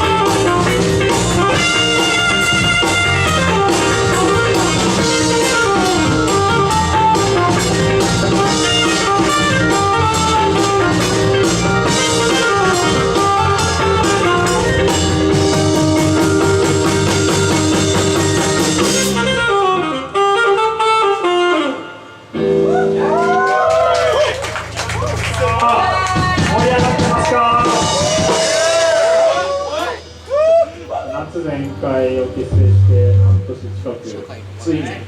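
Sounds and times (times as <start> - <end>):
drums: 0.0 - 21.7, 22.3 - 34.6
saxophone: 0.0 - 23.5
electric guitar: 0.0 - 30.4
bass guitar: 0.0 - 35.0.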